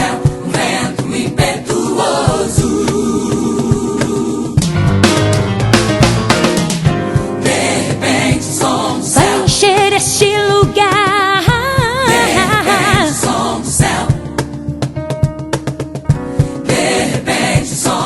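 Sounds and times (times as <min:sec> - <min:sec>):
band with drums: 0:00.0 - 0:18.0
sharp drum hits: 0:03.6 - 0:07.7.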